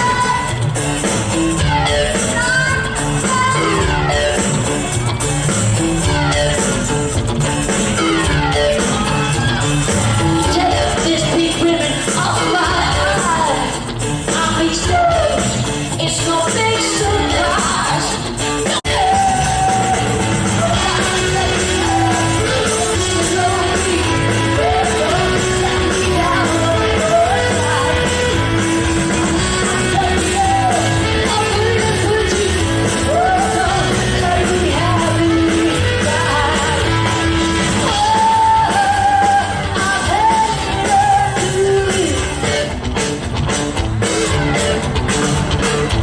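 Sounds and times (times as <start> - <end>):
crowd yelling: 0.0 - 46.0
rock band playing: 0.0 - 46.0
person singing: 7.8 - 42.7.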